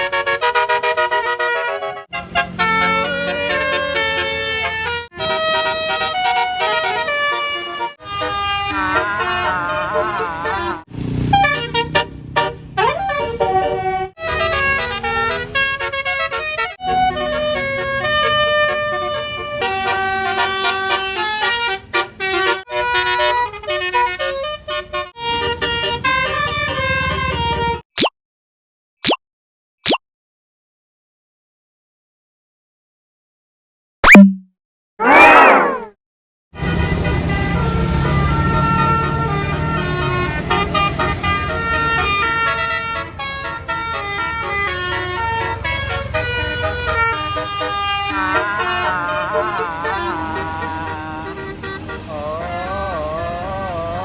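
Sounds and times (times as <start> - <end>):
bus horn playing a tune: 0.0 - 27.8, 36.6 - 52.5
brief chirp: 34.0 - 34.5.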